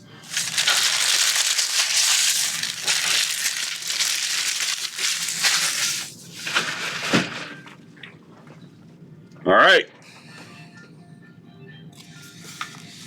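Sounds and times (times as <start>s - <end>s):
wrappers crinkling by hand: 0.1s - 7.3s.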